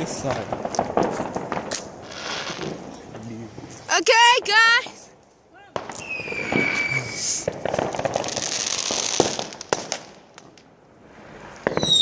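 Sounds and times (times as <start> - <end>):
fireworks crackling and banging: 0.0 - 12.0
firework whistle: 5.9 - 7.6, 11.6 - 12.0.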